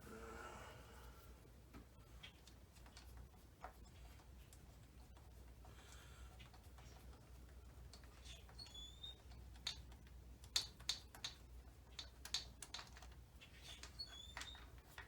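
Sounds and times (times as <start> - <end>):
hand tools clicking and tapping: 9.5 - 15.0.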